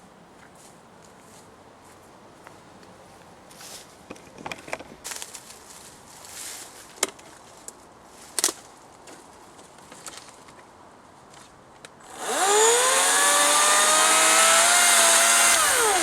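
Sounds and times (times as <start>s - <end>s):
branches rustling: 0.4s - 12.7s.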